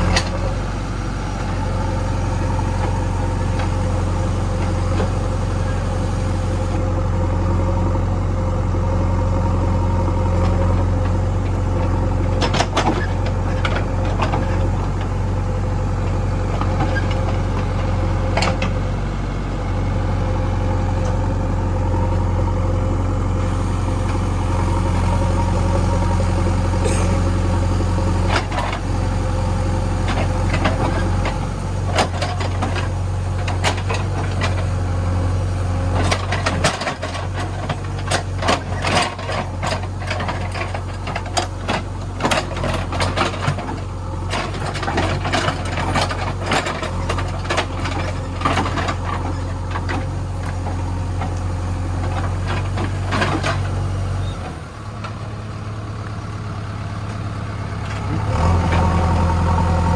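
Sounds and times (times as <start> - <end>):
diesel engine running: 0.0 - 59.9
metal clanks and rattles: 30.1 - 34.6, 35.9 - 51.4, 52.0 - 53.7.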